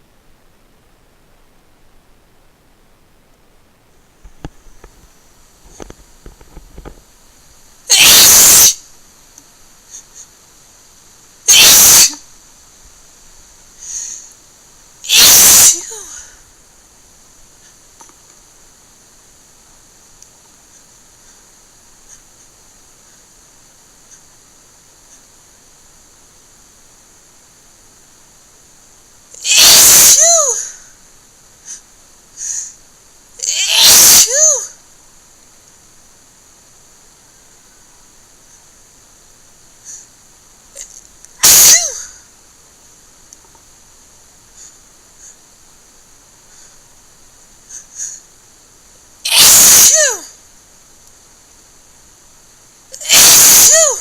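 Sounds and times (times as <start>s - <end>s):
person sneezing wetly: 7.9s - 8.8s, 11.5s - 12.2s, 15.1s - 16.4s, 29.4s - 30.8s, 33.4s - 34.8s, 40.8s - 42.2s, 49.3s - 50.3s, 52.9s - 54.0s
faint intake of breath: 9.8s - 10.8s, 13.7s - 14.6s, 20.6s - 24.4s, 30.6s - 33.0s, 39.7s - 40.3s, 44.4s - 45.6s, 46.4s - 47.0s, 47.6s - 48.4s
short breaths: 13.8s - 14.5s, 30.6s - 32.9s, 39.8s - 40.2s, 44.5s - 45.5s, 46.4s - 46.9s, 47.7s - 48.3s.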